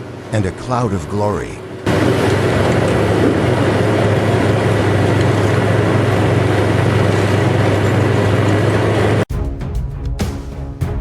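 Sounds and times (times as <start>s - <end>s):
diesel engine rumbling under load: 1.6s - 9.2s.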